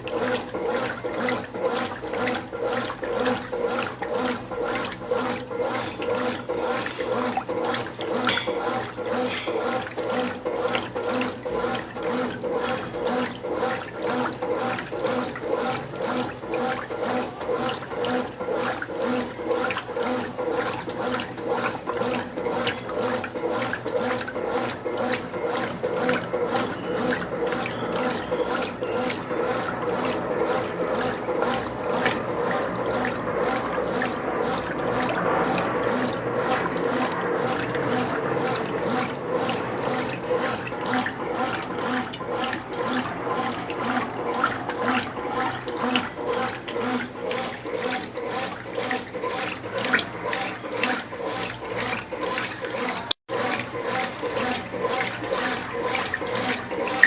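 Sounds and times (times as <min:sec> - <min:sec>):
washing machine motor hum: 0:00.0 - 0:57.0
water sloshing in washing machine: 0:00.0 - 0:57.0.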